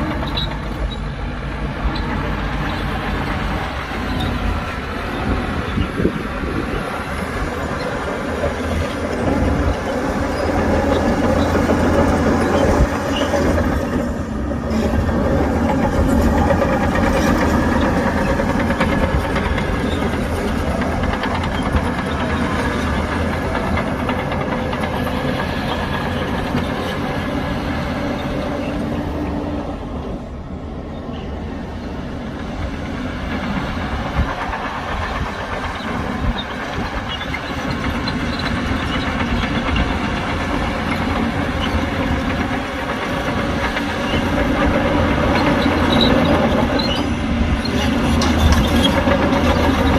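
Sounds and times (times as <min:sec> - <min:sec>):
heavy diesel engine under load: 0:00.0 - 0:49.9.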